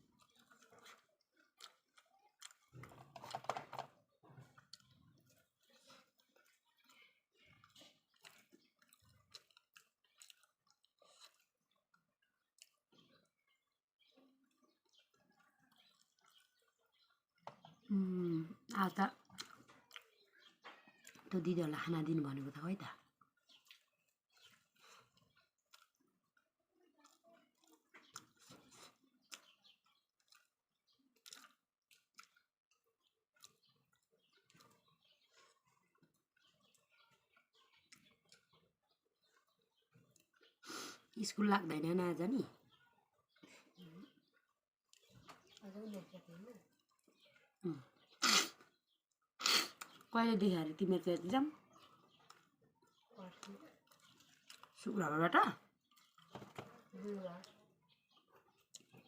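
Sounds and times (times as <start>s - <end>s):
person chewing with mouth smacks: 0.0s - 13.8s, 14.4s - 17.9s, 18.5s - 21.3s, 23.0s - 41.2s, 43.1s - 50.1s, 51.6s - 54.8s, 55.6s - 59.0s
mouth clicks and smacks: 47.8s - 48.8s.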